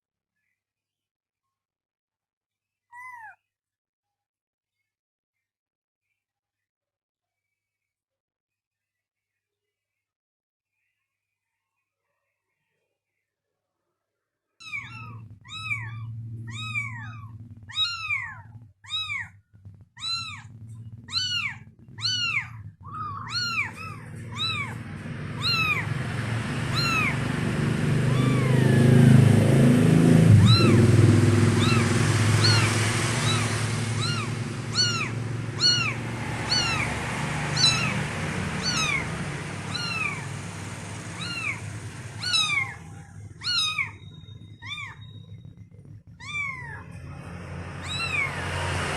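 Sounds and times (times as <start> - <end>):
kittens mewing: 14.6 - 19.4, 20.0 - 48.6
loud rushing noise with low hum: 20.0 - 48.9.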